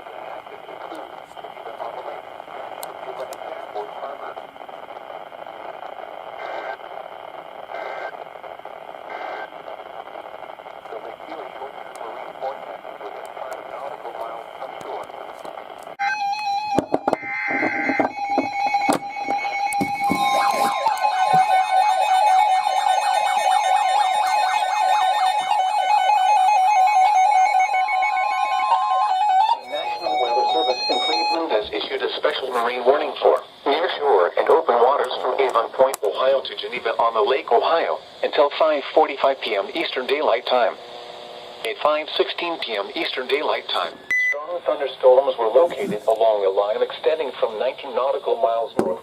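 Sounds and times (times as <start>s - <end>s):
radio static hiss: 0.0s - 16.0s, 16.6s - 49.0s
electronic alarms warbling: 16.0s - 31.5s
steady high warning tone: 16.0s - 33.2s.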